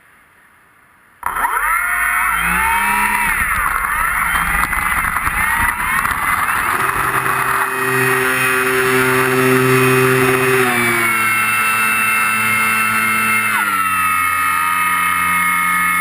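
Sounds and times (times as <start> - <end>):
model plane motor and propeller: 1.2 - 16.0
wind noise: 2.2 - 13.2.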